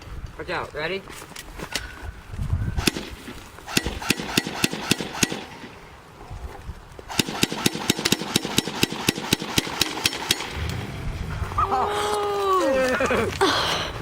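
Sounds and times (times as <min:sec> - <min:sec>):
airsoft gun shots: 0:02.8 - 0:05.8, 0:07.1 - 0:10.9.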